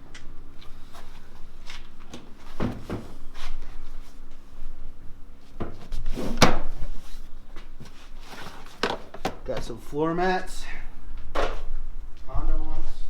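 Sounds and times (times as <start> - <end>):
car parts knocking and clunking: 8.8 - 9.8.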